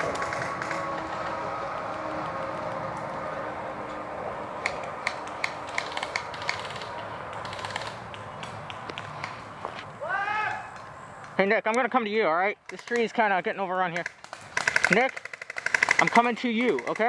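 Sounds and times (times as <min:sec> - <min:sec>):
airsoft gun full-auto burst: 0:14.0 - 0:17.0.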